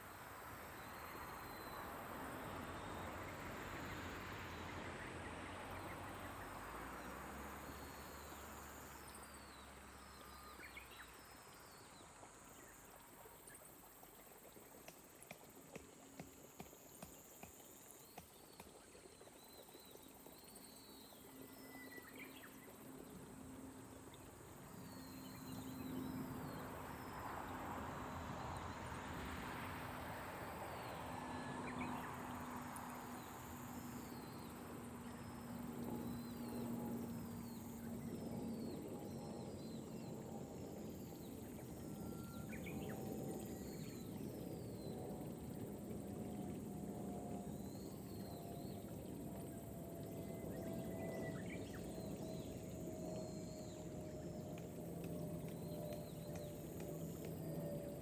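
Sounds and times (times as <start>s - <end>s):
high insect drone: 20.3s - 58.0s.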